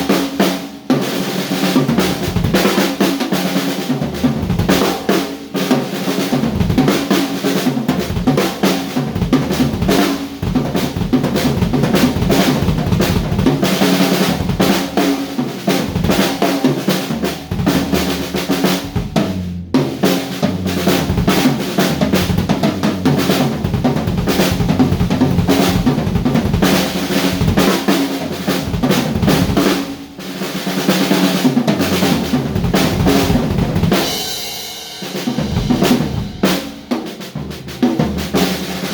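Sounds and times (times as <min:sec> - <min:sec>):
drum kit playing: 0:00.0 - 0:38.9.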